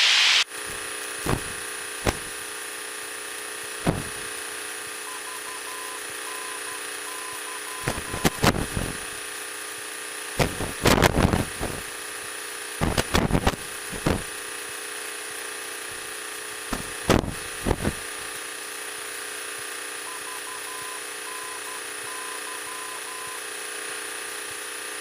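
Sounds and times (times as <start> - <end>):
steady electronic hum: 3.7 - 9.4, 20.0 - 23.6.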